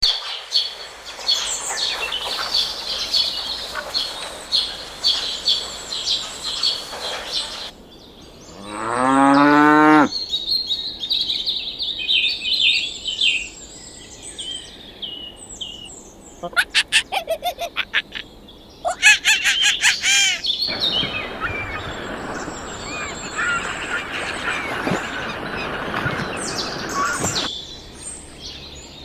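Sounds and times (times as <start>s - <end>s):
small birds chirping: 0.2s - 29.0s
cow mooing: 8.6s - 10.1s.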